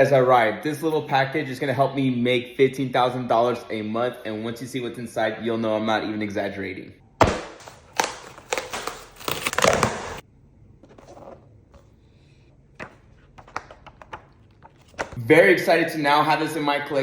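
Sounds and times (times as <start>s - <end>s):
packaging tearing and crinkling: 7.6s - 10.2s.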